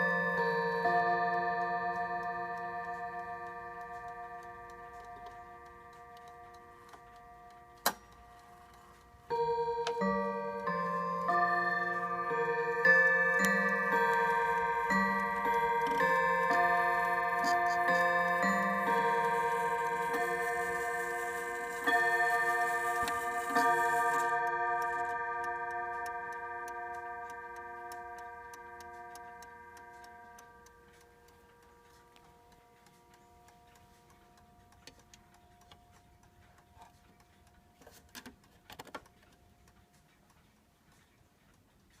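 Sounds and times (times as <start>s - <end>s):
mantel clock striking: 0.0s - 38.0s
clock ticking: 0.0s - 42.0s.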